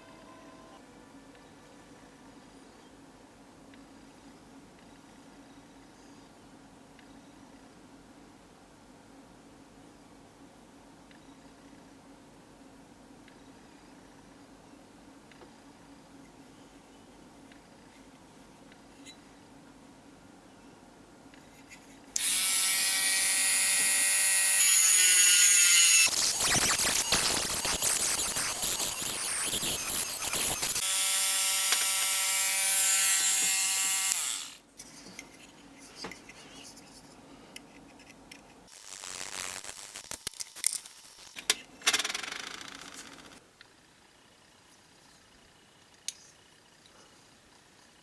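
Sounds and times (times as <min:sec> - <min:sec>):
electric tool motor whining: 0:22.2 - 0:34.6.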